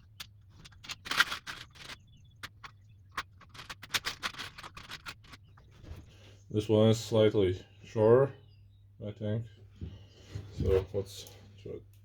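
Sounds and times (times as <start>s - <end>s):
screws rattling when rummaged: 0.0s - 5.7s.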